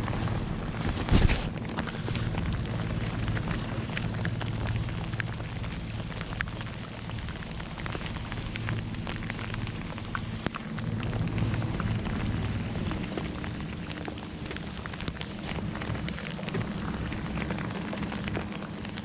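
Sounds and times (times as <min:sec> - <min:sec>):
heavy rain falling: 0:00.0 - 0:19.0
steady low hum: 0:00.0 - 0:19.0.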